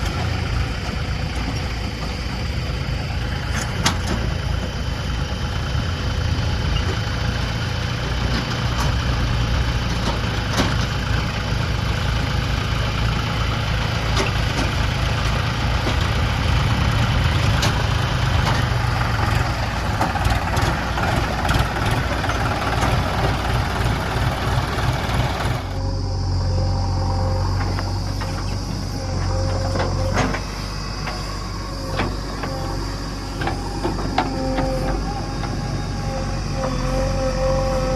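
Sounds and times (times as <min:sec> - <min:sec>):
heavy diesel engine idling: 0:00.0 - 0:37.9.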